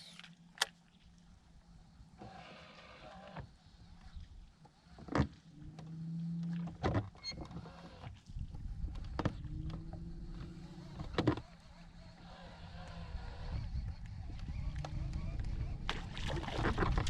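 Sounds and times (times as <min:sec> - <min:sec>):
electric motor humming: 0:08.8 - 0:16.2.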